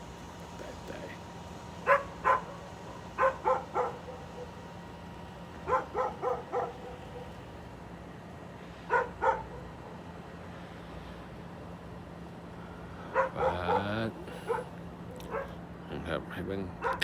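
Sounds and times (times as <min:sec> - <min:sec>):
dog barking: 0:01.8 - 0:04.6, 0:05.6 - 0:07.4, 0:08.9 - 0:09.8, 0:13.1 - 0:15.6, 0:16.8 - 0:17.0.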